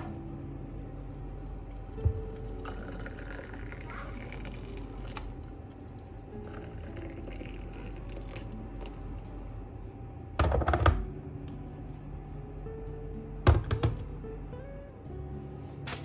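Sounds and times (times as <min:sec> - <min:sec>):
quiet background music: 0:00.0 - 0:16.0.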